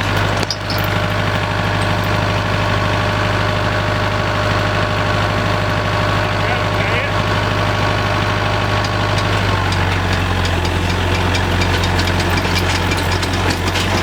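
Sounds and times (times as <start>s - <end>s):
engine idling: 0.0s - 14.0s
light rapid ticking: 8.4s - 14.0s.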